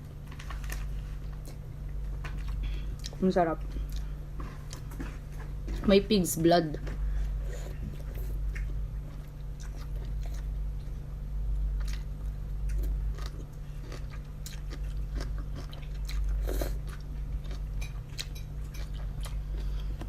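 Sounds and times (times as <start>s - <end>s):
steady low hum: 0.0s - 20.0s
chewing with wet mouth clicks: 2.2s - 5.8s, 7.9s - 11.0s, 11.6s - 20.0s.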